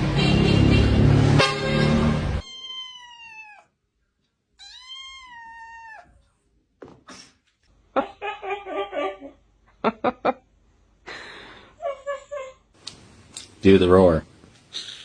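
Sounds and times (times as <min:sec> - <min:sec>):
cat meowing: 0:02.4 - 0:03.8, 0:04.6 - 0:06.2.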